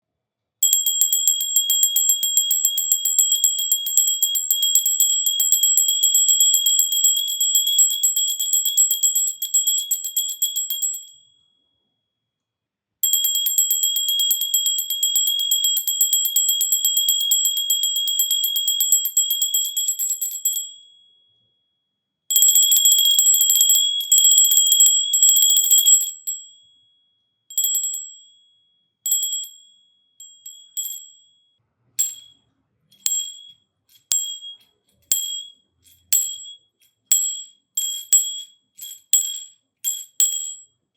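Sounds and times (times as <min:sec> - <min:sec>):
hand bell ringing: 0:00.6 - 0:11.1, 0:30.2 - 0:31.1, 0:32.0 - 0:40.6.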